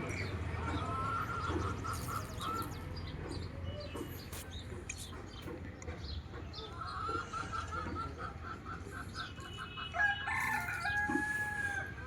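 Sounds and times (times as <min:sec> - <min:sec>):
small birds chirping: 0:00.1 - 0:08.1
chickens clucking: 0:06.3 - 0:12.0.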